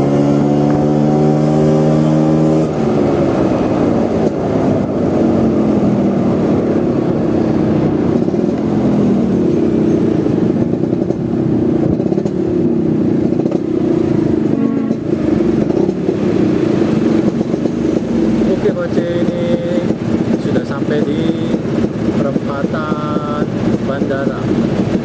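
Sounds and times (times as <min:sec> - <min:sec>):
wind noise: 0:00.0 - 0:18.5
road noise: 0:00.0 - 0:25.0
scooter engine running: 0:00.0 - 0:25.0.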